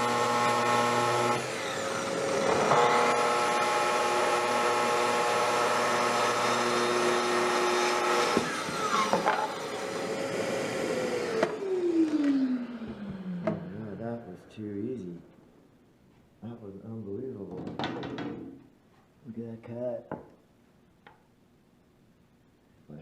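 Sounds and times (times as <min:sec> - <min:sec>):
dust extractor running: 0:00.0 - 0:14.0
circular saw cutting wood: 0:00.0 - 0:14.2.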